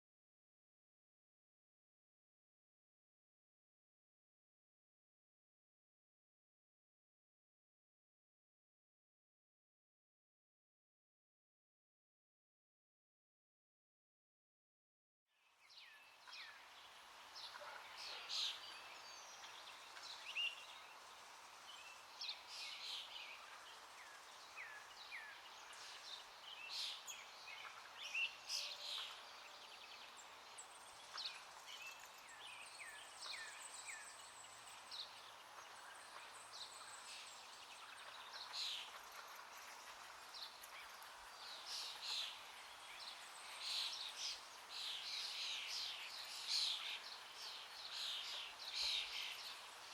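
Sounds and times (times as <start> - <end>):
songbirds chirping: 15.4 - 49.9
steady background hiss: 15.6 - 49.9.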